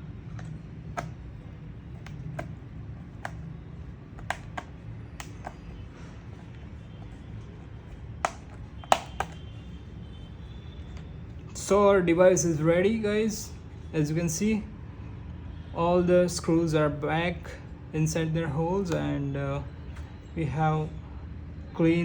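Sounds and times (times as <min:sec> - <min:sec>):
steady low hum: 0:00.0 - 0:15.5
screwdriver tapping plastic case: 0:00.4 - 0:03.5, 0:04.2 - 0:07.2, 0:08.2 - 0:09.5.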